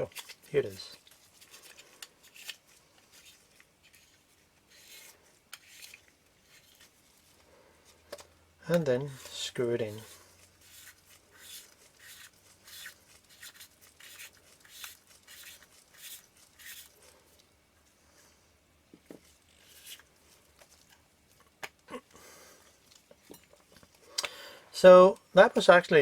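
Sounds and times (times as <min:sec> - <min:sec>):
faint scratchy rubbing of lens part: 0:00.0 - 0:07.4, 0:09.1 - 0:17.1.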